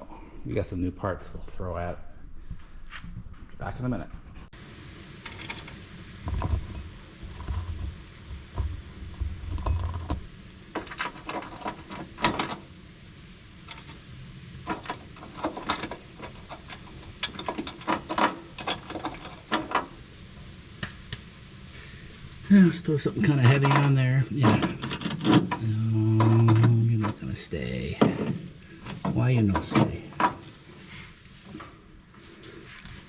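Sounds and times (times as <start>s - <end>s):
small metal parts clinking: 4.6s - 12.6s.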